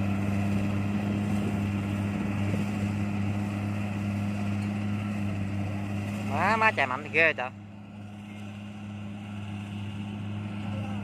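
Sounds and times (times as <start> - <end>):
combine harvester engine humming: 0.0 - 11.0.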